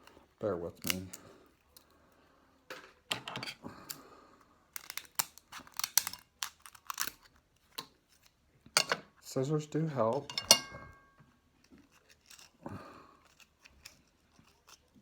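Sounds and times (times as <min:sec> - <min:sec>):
crinkling: 0:04.7 - 0:08.4, 0:11.2 - 0:15.0.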